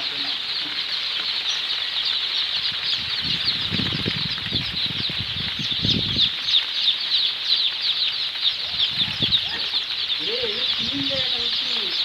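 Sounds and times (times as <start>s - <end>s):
small wings flapping: 0.0s - 6.8s
chicks peeping: 0.0s - 12.0s.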